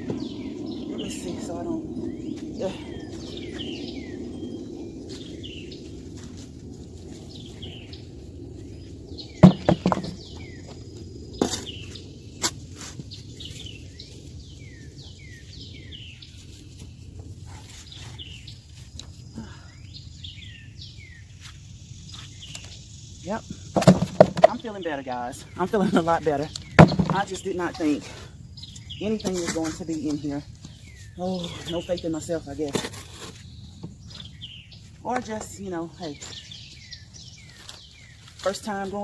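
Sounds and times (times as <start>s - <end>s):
songbirds chirping: 0.0s - 39.0s
knocks from digging soil: 9.4s - 10.2s, 23.8s - 24.6s.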